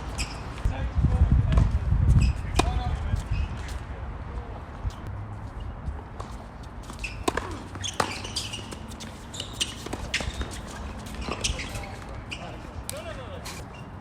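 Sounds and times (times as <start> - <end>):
wind on microphone: 0.0 - 6.0.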